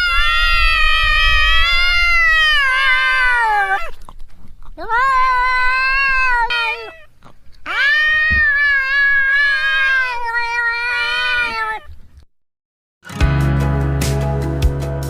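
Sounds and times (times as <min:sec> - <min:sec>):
cat meowing: 0:00.0 - 0:04.0, 0:04.8 - 0:12.0.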